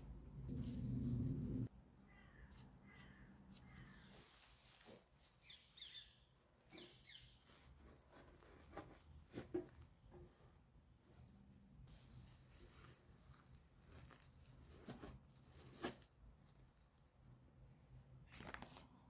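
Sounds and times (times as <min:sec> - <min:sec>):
bird chirps: 0:05.4 - 0:07.4.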